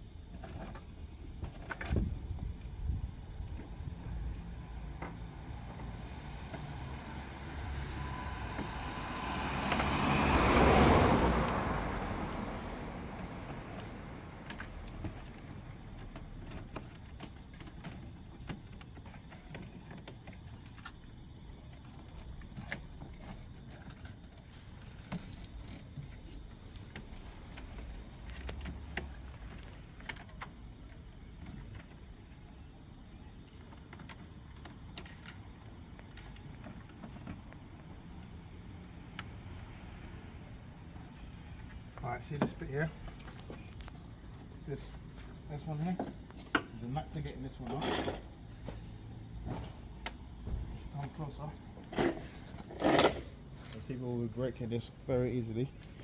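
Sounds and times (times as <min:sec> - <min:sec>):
car passing: 0:05.8 - 0:14.4.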